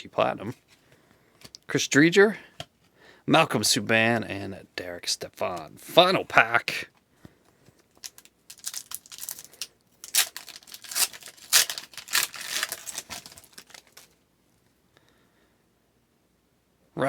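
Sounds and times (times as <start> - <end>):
foil wrapper tearing and crinkling: 8.0 - 14.2.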